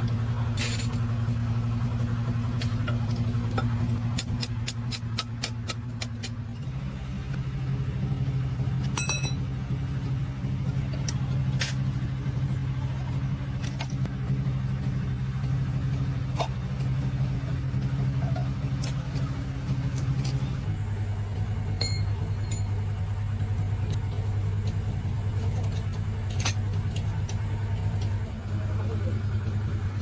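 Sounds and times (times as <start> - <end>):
engine droning: 0.0 - 30.0
metal clinks and taps: 8.8 - 9.4.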